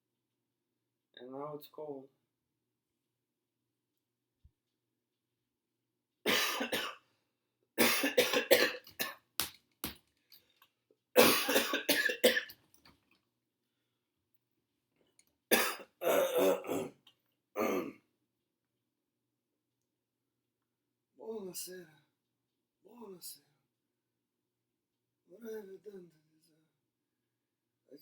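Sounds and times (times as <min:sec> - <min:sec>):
man coughing: 0:06.3 - 0:07.0, 0:07.8 - 0:09.2, 0:11.2 - 0:12.5, 0:15.5 - 0:17.0, 0:17.6 - 0:18.0.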